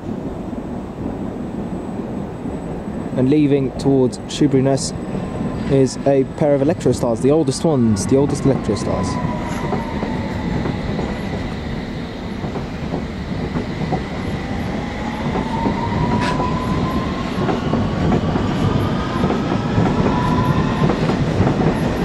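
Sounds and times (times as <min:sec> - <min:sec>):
train wheels rumbling on track: 0:00.0 - 0:22.0.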